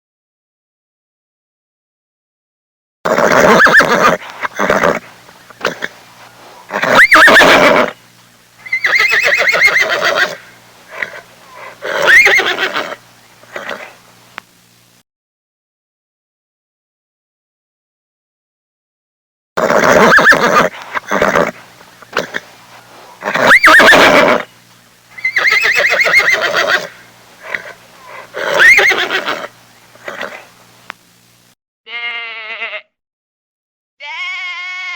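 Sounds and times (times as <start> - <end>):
animal calling with quavering pitch: 3.1 - 8.0, 8.6 - 14.0, 19.6 - 30.6
horse whinnying: 3.1 - 8.0, 8.6 - 14.0, 19.6 - 24.5, 25.2 - 30.5.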